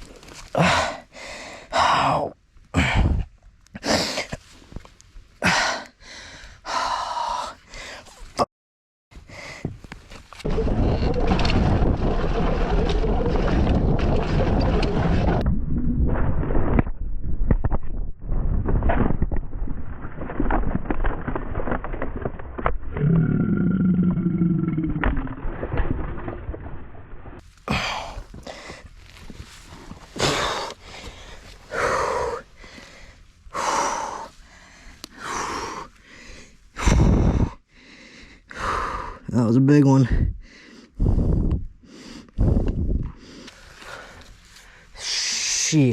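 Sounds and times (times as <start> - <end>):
man breathing heavily in pain: 0.5 - 4.3, 5.4 - 8.2, 9.2 - 9.8, 27.6 - 29.0, 30.1 - 39.3, 40.2 - 45.3
low rumble: 10.5 - 31.8.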